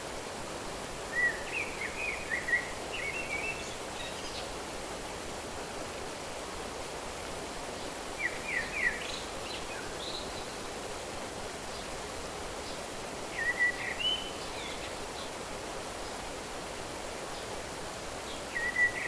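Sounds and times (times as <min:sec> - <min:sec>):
songbird chirping: 0:01.1 - 0:04.6, 0:07.8 - 0:10.7, 0:12.6 - 0:15.4, 0:18.2 - 0:19.0.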